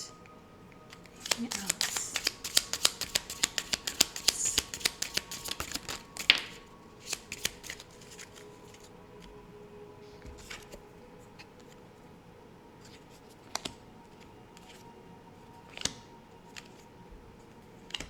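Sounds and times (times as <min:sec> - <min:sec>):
card snap: 0:00.9 - 0:08.4, 0:15.7 - 0:16.8
cards being shuffled: 0:00.9 - 0:08.9, 0:10.2 - 0:10.8, 0:12.8 - 0:14.8, 0:15.7 - 0:16.8.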